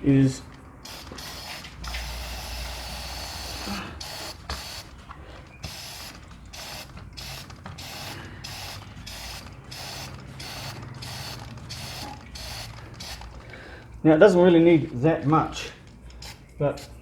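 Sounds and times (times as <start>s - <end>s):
aerosol spray hissing: 0.8s - 4.9s, 5.6s - 13.4s.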